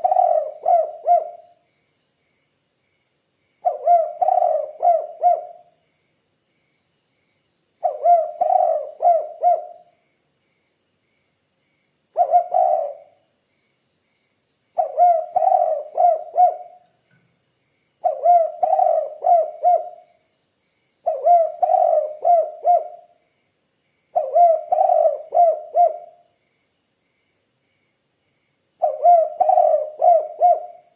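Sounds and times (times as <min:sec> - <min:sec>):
dove cooing: 0:00.0 - 0:01.6, 0:03.6 - 0:05.7, 0:07.8 - 0:09.9, 0:12.2 - 0:13.2, 0:14.8 - 0:16.8, 0:18.0 - 0:20.1, 0:21.0 - 0:23.1, 0:24.2 - 0:26.2, 0:28.8 - 0:30.9.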